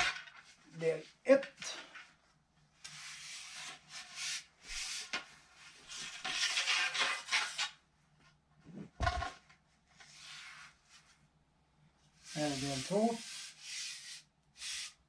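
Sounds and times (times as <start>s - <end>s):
fishing pole rubbing and scraping: 12.3s - 15.0s.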